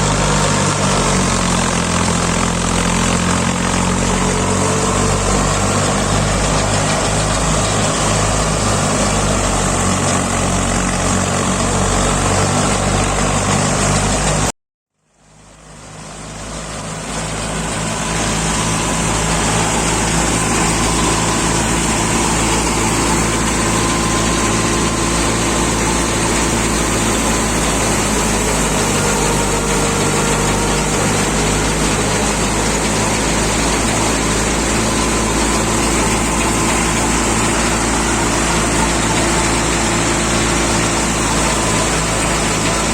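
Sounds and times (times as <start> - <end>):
tractor engine running: 0.0 - 14.5, 15.2 - 42.9.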